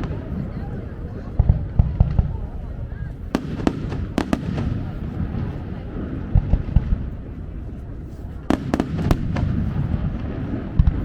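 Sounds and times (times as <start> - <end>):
deep firework booms: 0.0 - 11.0
low rumble of firework shells: 0.0 - 11.0
sharp firework cracks: 3.2 - 7.2, 8.4 - 11.0.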